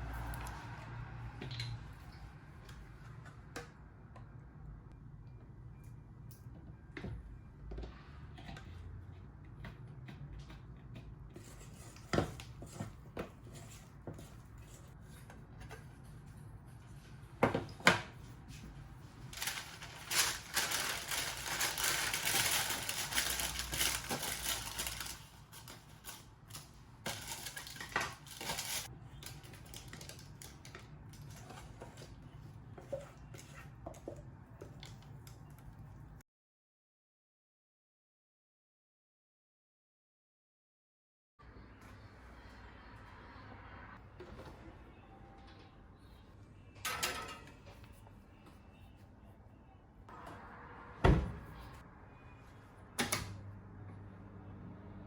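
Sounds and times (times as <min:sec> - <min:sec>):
utensils and bowls clinking: 0:46.8 - 0:47.8.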